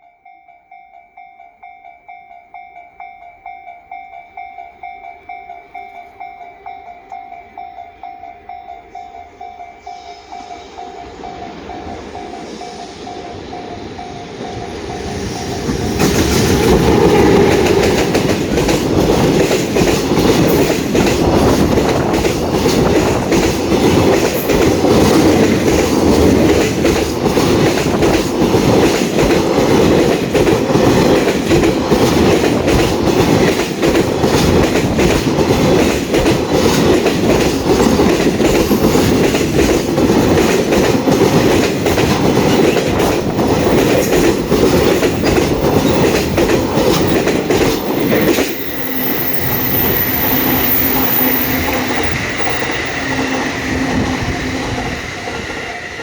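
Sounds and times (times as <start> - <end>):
level-crossing warning bell: 0.0 - 56.0
train passing: 0.0 - 56.0
wagons clattering over rail joints: 15.9 - 53.6.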